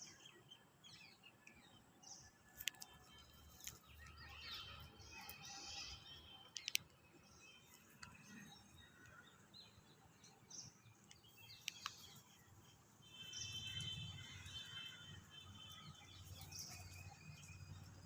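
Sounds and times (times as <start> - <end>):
small birds chirping: 0.0 - 18.0
clicks: 6.4 - 7.0, 11.0 - 12.2.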